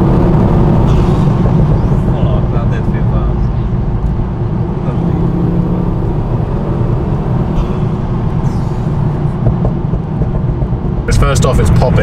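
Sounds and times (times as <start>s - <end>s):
car engine droning: 0.0s - 12.0s
road noise: 0.0s - 12.0s.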